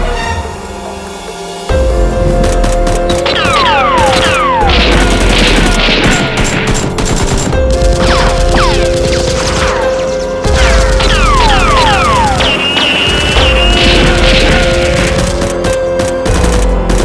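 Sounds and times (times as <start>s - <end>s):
dramatic background music: 0.0s - 17.0s
gunfire sound effects: 3.2s - 9.9s, 10.5s - 15.6s.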